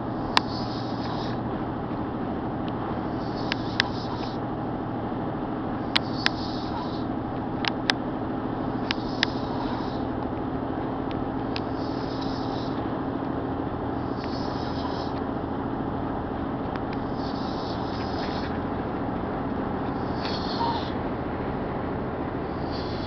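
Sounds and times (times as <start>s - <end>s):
steady low hum: 0.0s - 23.0s
man snoring with whistling rasp: 0.1s - 1.5s, 3.0s - 4.4s, 5.8s - 7.1s, 8.7s - 10.1s, 11.6s - 12.8s, 13.9s - 15.2s, 17.0s - 18.6s, 19.9s - 21.0s, 22.4s - 23.0s.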